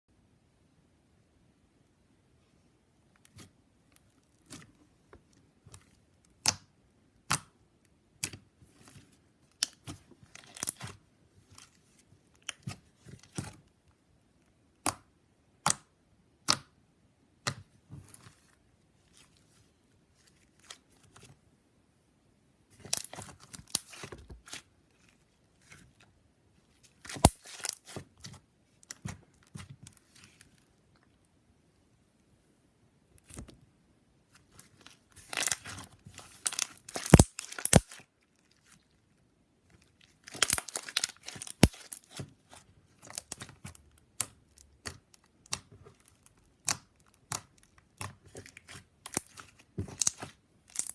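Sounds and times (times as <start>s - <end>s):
slime crackling pops: 36.5s - 38.0s.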